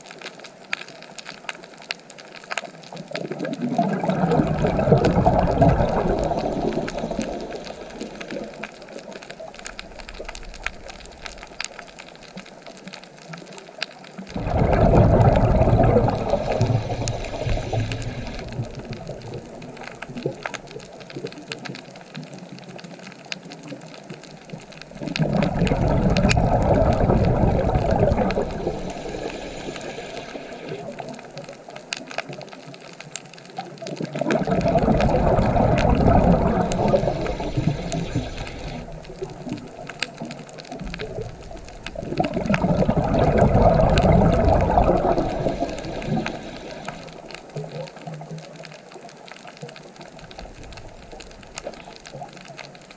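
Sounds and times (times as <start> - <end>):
ocean waves breaking: 3.6 - 9.1, 14.3 - 20.6.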